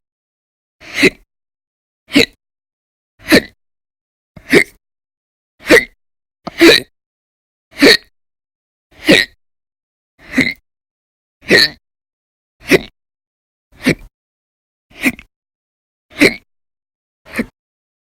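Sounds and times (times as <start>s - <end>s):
person hiccuping: 2.1s - 2.4s, 3.2s - 3.6s, 4.4s - 4.8s, 5.6s - 6.9s, 7.8s - 8.1s, 9.0s - 9.4s, 10.2s - 10.6s, 11.4s - 11.8s, 12.6s - 12.9s, 13.8s - 14.1s, 16.1s - 16.5s, 17.3s - 17.6s.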